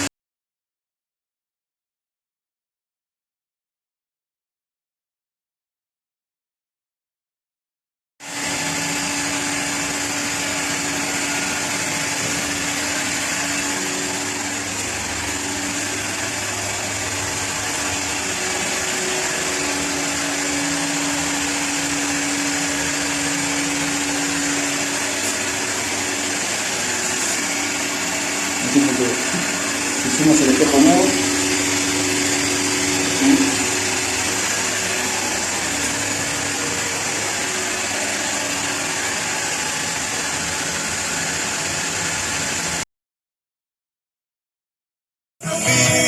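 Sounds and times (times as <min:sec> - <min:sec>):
small electric motor running: 0:08.2 - 0:42.8.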